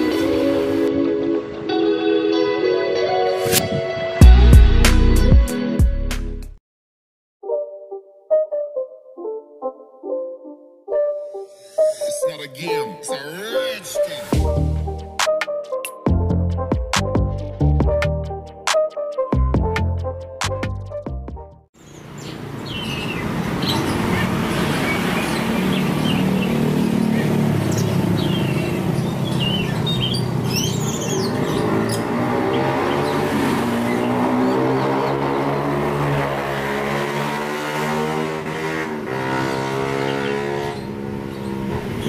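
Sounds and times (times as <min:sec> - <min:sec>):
bird chirping and whistling: 0:21.9 - 0:26.6, 0:27.7 - 0:33.2.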